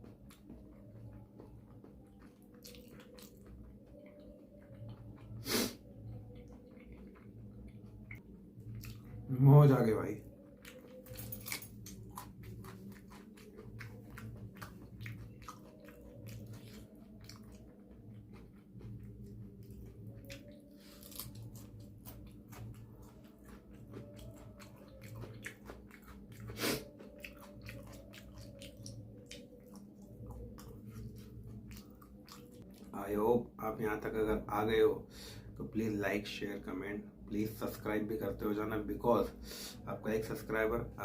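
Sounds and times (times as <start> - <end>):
person chewing food: 0.0 - 9.3, 10.2 - 33.0.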